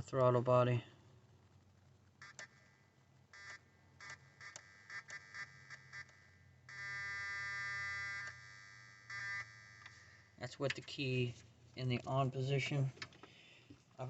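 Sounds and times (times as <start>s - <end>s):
electrical buzzing: 2.2s - 2.7s, 3.3s - 10.5s.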